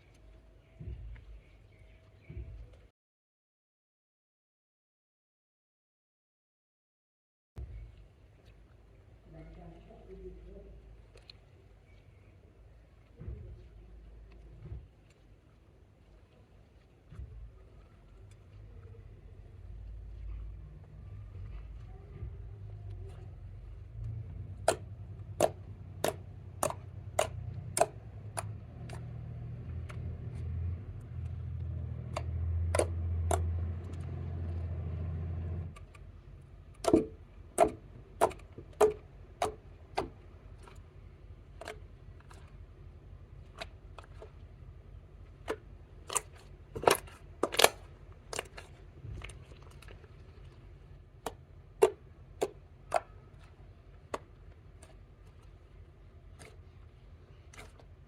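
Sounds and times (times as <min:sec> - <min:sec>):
slime clicking and popping: 0:24.6 - 0:29.2.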